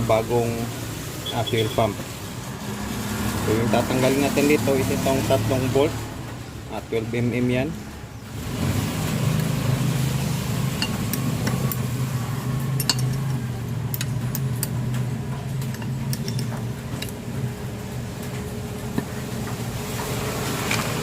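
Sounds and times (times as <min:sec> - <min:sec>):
low mechanical hum: 0:03.5 - 0:21.0
metal tools clinking: 0:12.7 - 0:14.8, 0:15.6 - 0:17.2.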